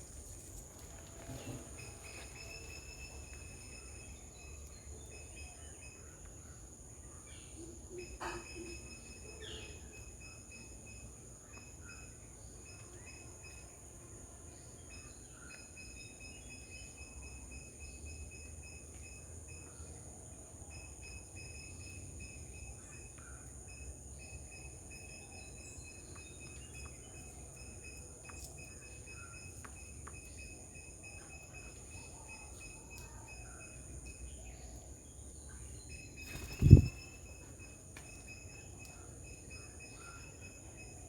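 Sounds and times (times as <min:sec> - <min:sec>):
insects droning: 0:00.0 - 0:41.0
faint bird chirps: 0:01.3 - 0:41.0.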